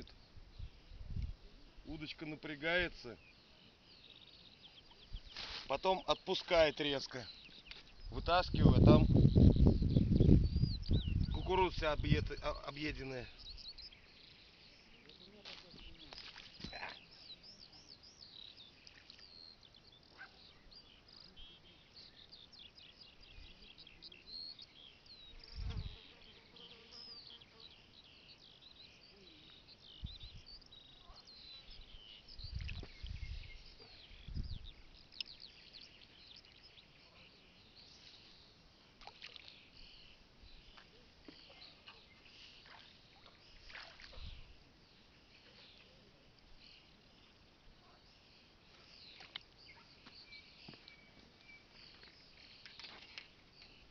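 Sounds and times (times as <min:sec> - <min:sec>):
small birds chirping: 0:00.0 - 0:53.9
wind buffeting microphone: 0:08.0 - 0:12.5, 0:32.4 - 0:34.8.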